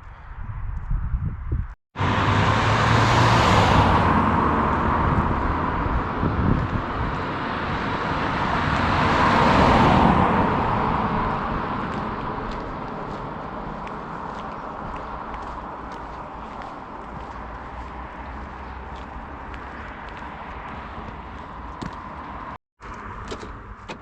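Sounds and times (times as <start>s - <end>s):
vehicles passing on road: 2.0s - 24.0s.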